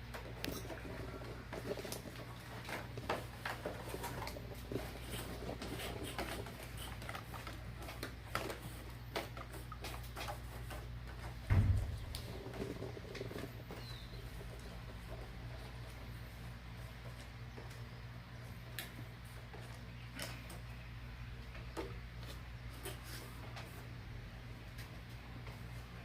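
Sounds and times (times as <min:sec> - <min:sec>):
steady low hum: 0:11.4 - 0:16.6.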